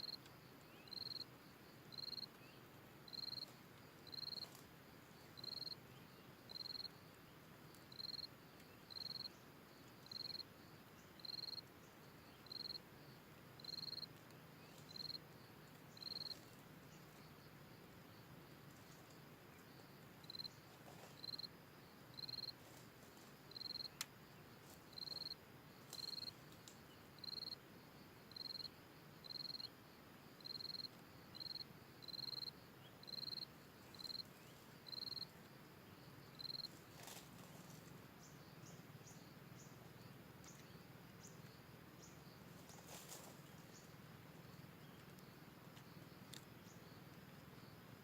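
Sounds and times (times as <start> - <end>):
faint forest background: 0.0 - 48.0
small animal chirping: 14.7 - 15.2.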